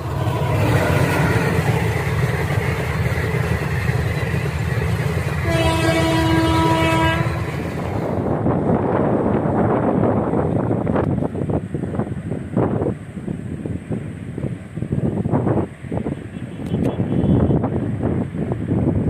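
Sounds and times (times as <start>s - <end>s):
diesel locomotive engine rumble: 0.0s - 19.0s
passing train rushing: 0.0s - 19.0s
locomotive horn blast: 0.1s - 1.6s, 5.4s - 7.6s, 16.3s - 17.7s.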